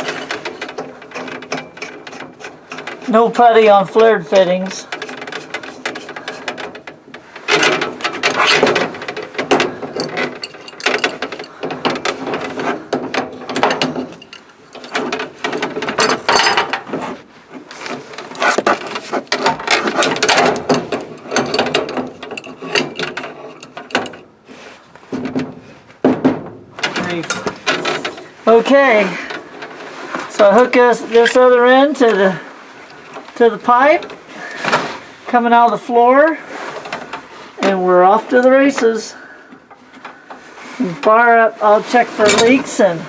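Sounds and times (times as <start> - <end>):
wrench clicking and scraping: 0.0 - 16.9, 17.6 - 24.2.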